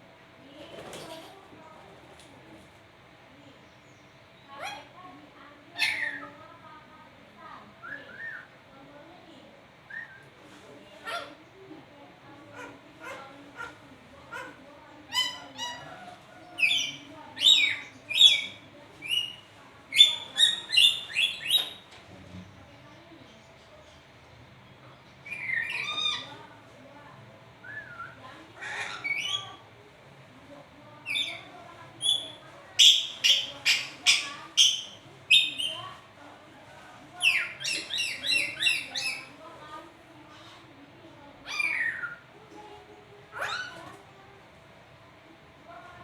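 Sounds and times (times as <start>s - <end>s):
parrot shrill calls: 5.8s - 6.3s, 25.3s - 26.4s, 27.8s - 29.6s, 41.4s - 42.2s, 43.3s - 43.8s
parrot giving harsh calls: 28.6s - 29.6s.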